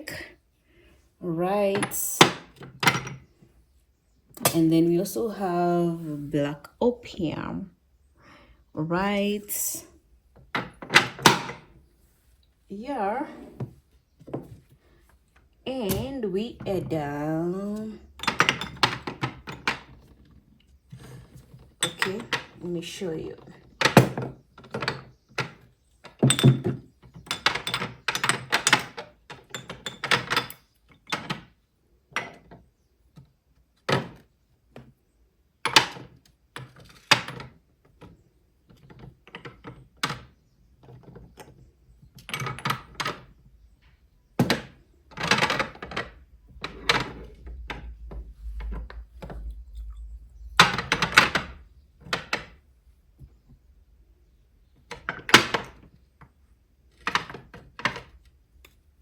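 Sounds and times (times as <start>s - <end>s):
low rumble: 44.9s - 54.2s.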